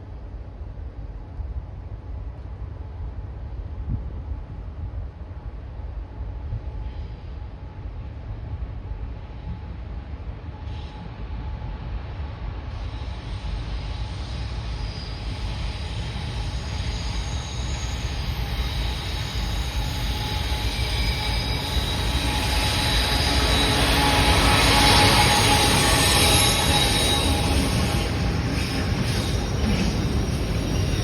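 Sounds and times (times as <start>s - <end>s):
freight train rumble: 0.0s - 31.0s
high-pitched wheel squeal: 14.5s - 31.0s.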